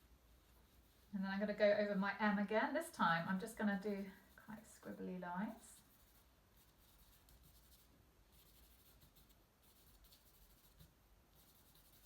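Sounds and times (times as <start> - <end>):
charcoal scratching on paper: 4.0 - 12.0.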